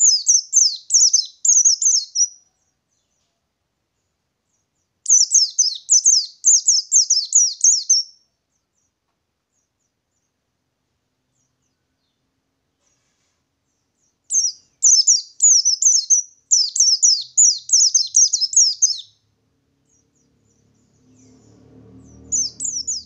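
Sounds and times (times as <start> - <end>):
bird singing rolling song: 0.0 - 23.0
faint low rumble: 19.2 - 23.0.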